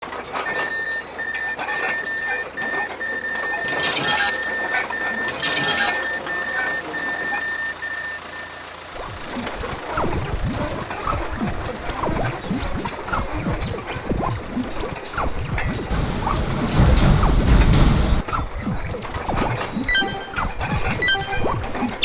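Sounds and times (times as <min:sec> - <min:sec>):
crossing signal beeping: 0:00.4 - 0:11.6, 0:19.5 - 0:22.0.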